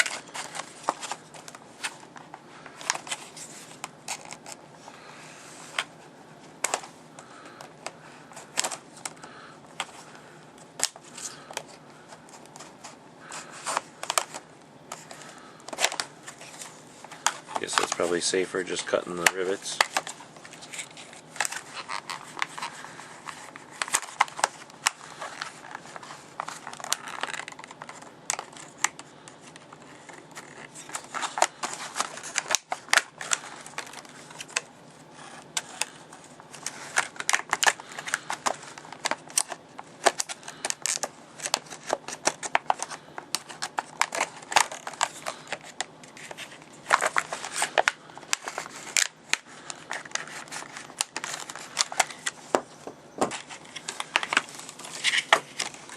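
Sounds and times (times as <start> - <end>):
stiff plastic clicking and crackling: 10.7 - 52.6
knife cutting plastic packaging: 17.2 - 52.4.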